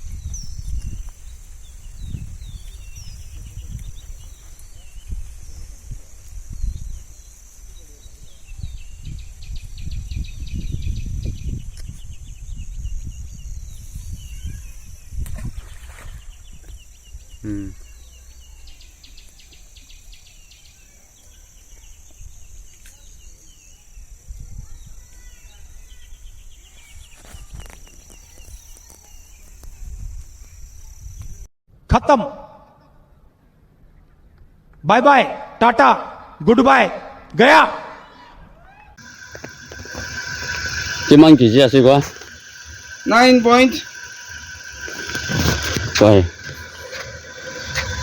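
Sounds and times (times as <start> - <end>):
birds twittering: 39.0 - 48.0
insect drone: 39.0 - 48.0
low rumble: 39.0 - 48.0.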